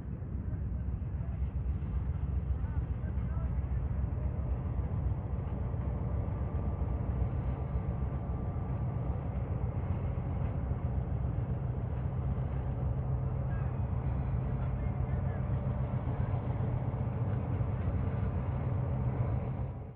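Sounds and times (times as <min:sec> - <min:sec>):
diesel locomotive rumbling: 0:00.0 - 0:19.9.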